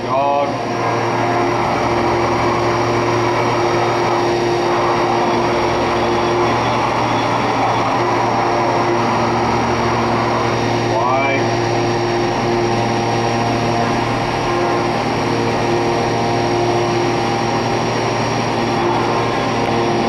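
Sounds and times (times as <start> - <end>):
high whine: 0.0 - 20.0
machine hum and whir: 0.0 - 20.0.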